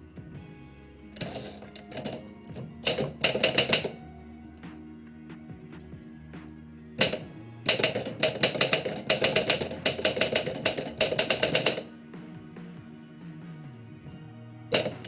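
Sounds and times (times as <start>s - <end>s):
background music: 0.0s - 15.0s
typewriter key strikes: 1.2s - 4.0s, 7.0s - 11.9s, 14.7s - 15.0s.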